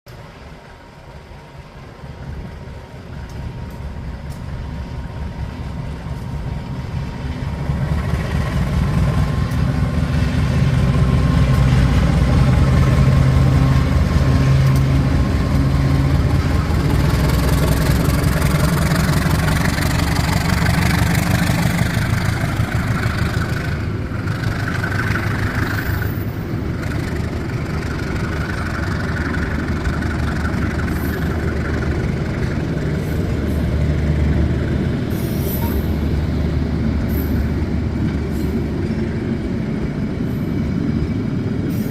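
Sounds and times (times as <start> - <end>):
diesel locomotive engine: 0.1 - 41.9
train coaches rumbling on rails: 0.1 - 41.9.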